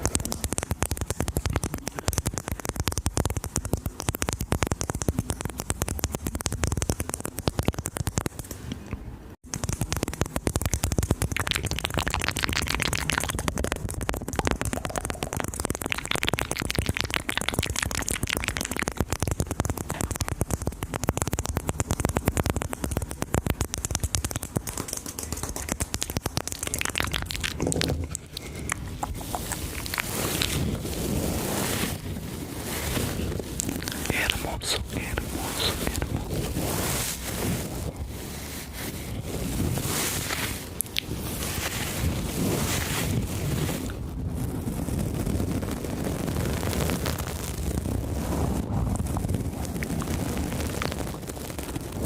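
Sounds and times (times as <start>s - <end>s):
wet mouth clicks and smacks: 0.0s - 31.1s, 33.5s - 36.6s, 40.3s - 41.8s.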